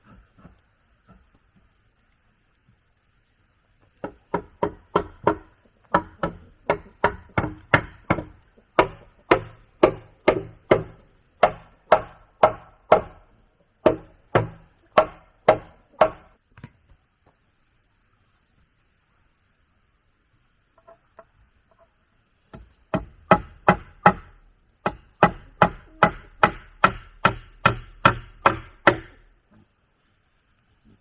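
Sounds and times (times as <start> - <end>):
hand tool striking wood: 4.0 - 13.2, 13.8 - 16.3, 22.5 - 29.3.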